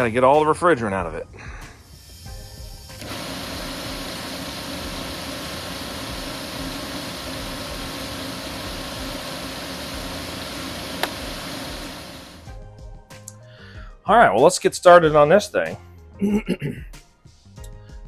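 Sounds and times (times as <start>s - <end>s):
recovery machine running: 2.0s - 12.5s
sharp click: 11.0s - 11.3s.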